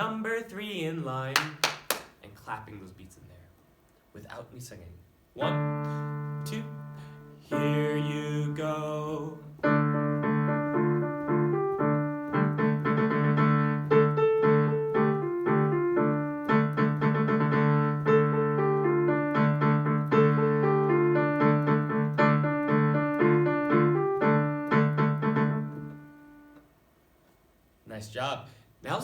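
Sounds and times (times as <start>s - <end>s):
piano playing a children's song: 5.4s - 26.7s.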